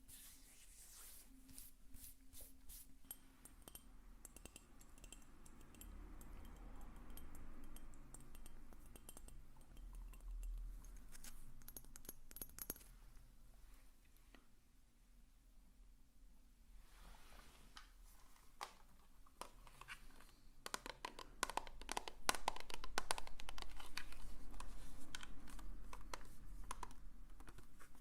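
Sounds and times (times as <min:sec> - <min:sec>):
soft handling noise: 0:00.0 - 0:03.6, 0:16.8 - 0:20.5, 0:23.5 - 0:28.0
tapping on small hard objects: 0:20.6 - 0:24.0.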